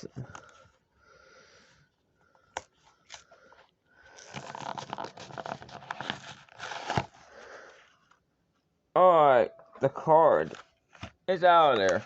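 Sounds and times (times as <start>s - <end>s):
packaging tearing and crinkling: 4.2s - 7.2s.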